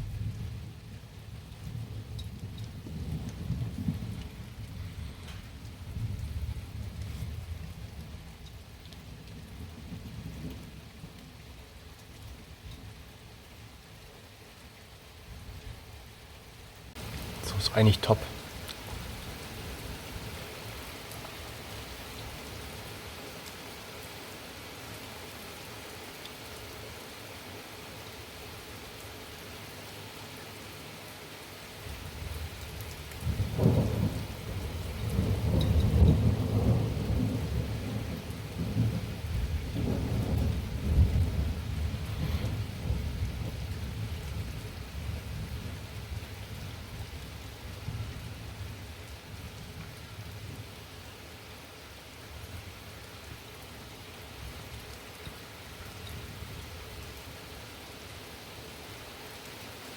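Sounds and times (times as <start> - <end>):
steady rain: 0.0 - 59.9
thunder rolling: 33.2 - 43.6.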